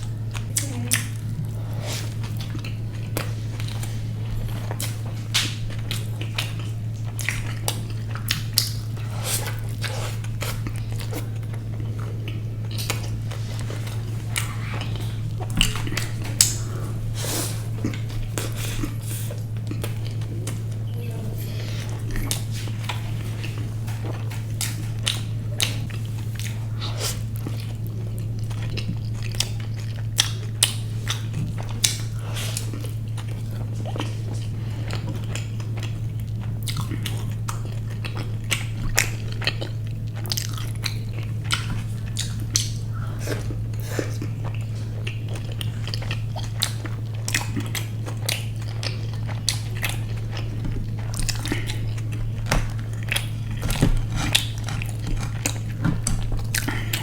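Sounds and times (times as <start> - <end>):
steady low hum: 0.0 - 57.0
person biting and chewing: 21.9 - 57.0.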